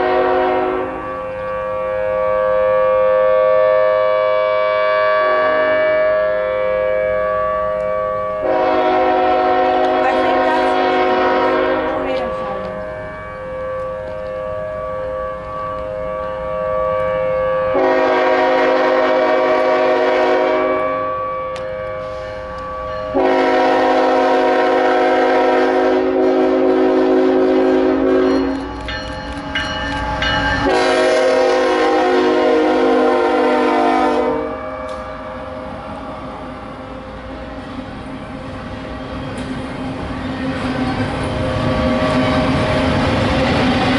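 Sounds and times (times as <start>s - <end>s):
train air horn blasts: 0.0s - 28.8s, 30.6s - 35.5s
warning siren: 0.0s - 28.8s, 29.9s - 35.7s.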